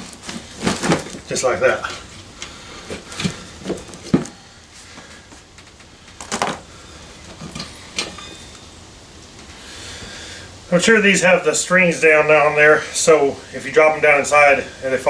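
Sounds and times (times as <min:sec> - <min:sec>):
metal tools knocking on wheel rim: 0:07.2 - 0:09.6.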